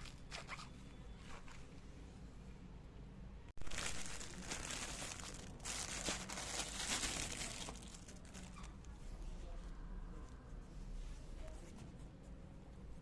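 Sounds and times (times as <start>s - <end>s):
packaging crinkling: 3.6s - 8.8s.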